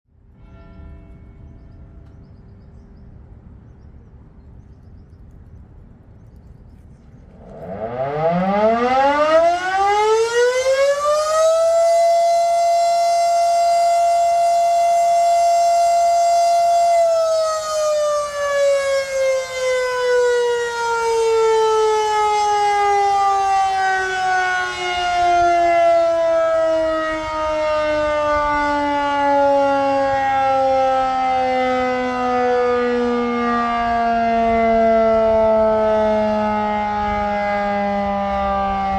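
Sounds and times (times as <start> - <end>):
warning siren wailing: 7.2 - 38.9.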